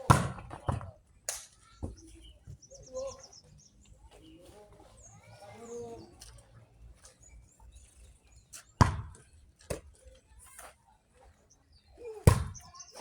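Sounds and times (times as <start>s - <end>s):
faint low bird calls: 1.6s - 8.7s
bird chirping trill: 1.7s - 6.2s, 11.5s - 13.0s.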